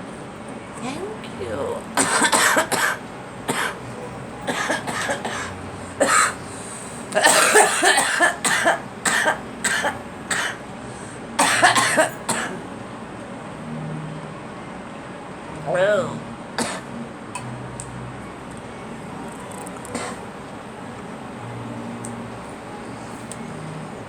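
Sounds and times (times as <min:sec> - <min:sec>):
girl coughing: 0:02.0 - 0:03.8, 0:04.5 - 0:06.4, 0:07.2 - 0:10.6, 0:11.4 - 0:12.6, 0:16.6 - 0:17.5, 0:19.9 - 0:20.3.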